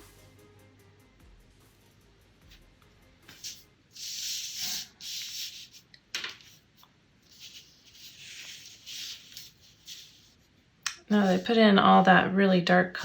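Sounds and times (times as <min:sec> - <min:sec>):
paintbrush scrubbing strokes: 0:03.3 - 0:12.1.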